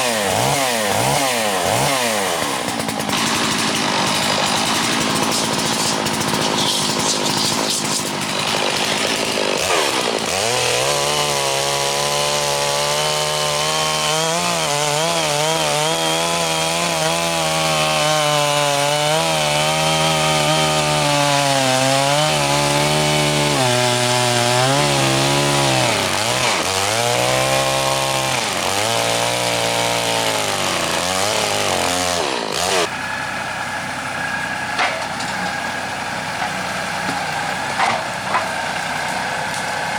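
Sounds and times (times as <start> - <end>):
band saw cutting log: 0.0 - 39.9
small gas engine running: 0.0 - 39.9.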